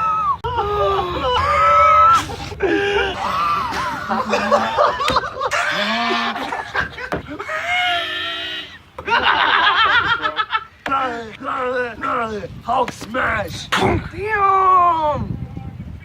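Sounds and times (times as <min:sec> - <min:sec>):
high-pitched wheezing laughter: 0:00.0 - 0:06.7.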